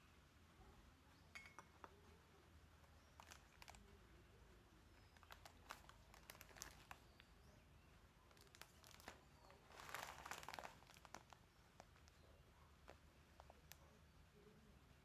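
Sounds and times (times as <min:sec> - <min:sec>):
rustling: 0:02.8 - 0:04.1, 0:04.9 - 0:07.5, 0:08.2 - 0:14.0
crinkling and clicks of handling: 0:02.8 - 0:14.0.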